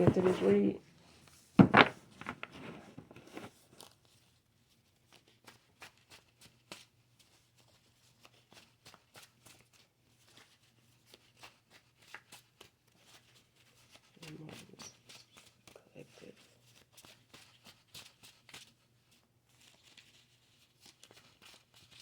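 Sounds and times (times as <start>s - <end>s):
cards being shuffled: 0.0s - 0.8s, 1.6s - 3.6s.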